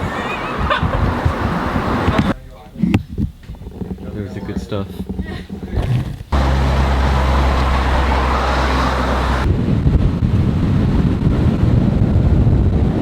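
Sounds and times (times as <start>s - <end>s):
car engine running: 5.8s - 10.2s.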